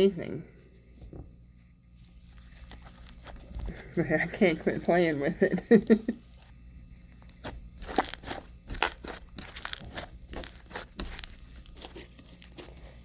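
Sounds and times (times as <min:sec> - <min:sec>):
bead-filled slime crackling: 0:02.0 - 0:05.1, 0:05.9 - 0:13.0.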